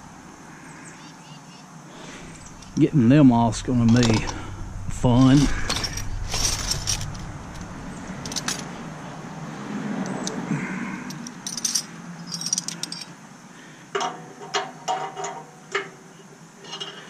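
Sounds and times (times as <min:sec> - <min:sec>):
metal tools clinking on steel: 0:05.2 - 0:07.6, 0:08.2 - 0:08.7, 0:11.0 - 0:13.2.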